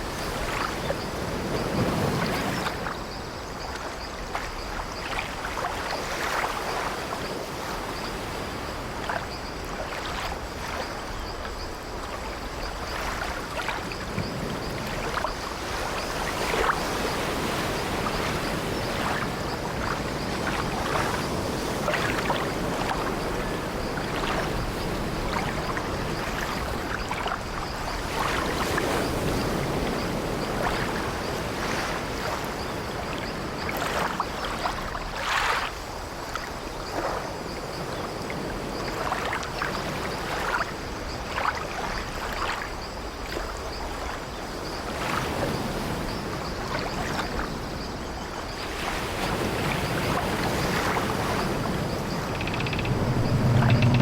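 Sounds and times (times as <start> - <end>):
sea waves washing: 48.9 - 54.0
wooden ship timbers creaking: 52.2 - 54.0.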